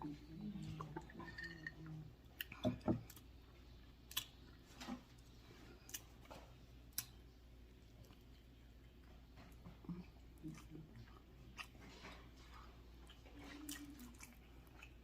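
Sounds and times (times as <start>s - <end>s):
wet mouth clicks and smacks eating: 4.0s - 4.4s.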